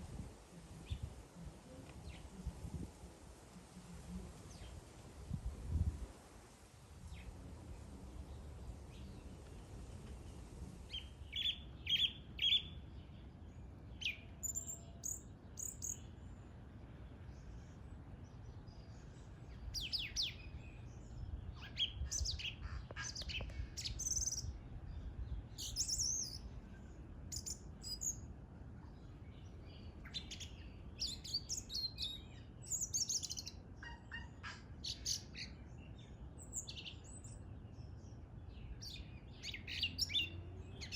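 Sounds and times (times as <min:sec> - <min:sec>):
bird singing: 0:10.9 - 0:40.9.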